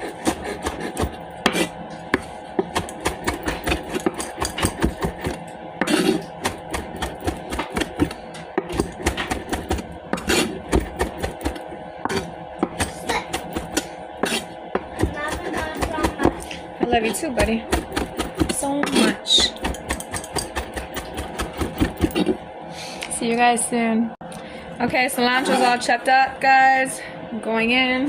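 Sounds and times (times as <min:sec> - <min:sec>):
knife chopping on cutting board: 0:00.0 - 0:16.4, 0:17.4 - 0:22.4.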